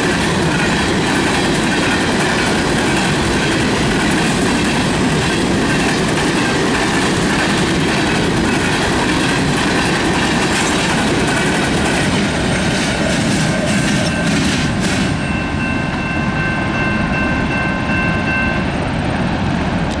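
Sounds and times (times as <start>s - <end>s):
wheels clicking over rail joints: 0.0s - 15.2s
freight train wheels rumbling: 0.0s - 20.0s
high squeal from train cars: 9.4s - 19.9s.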